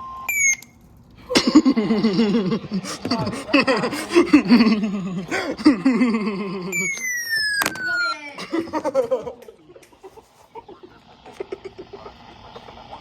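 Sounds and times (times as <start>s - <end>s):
loud laughing: 1.3s - 7.1s, 8.1s - 13.0s
high tone sliding downward: 6.3s - 8.4s.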